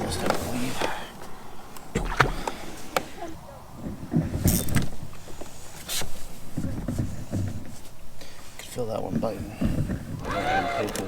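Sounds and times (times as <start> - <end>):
low thumps: 0.0 - 5.5.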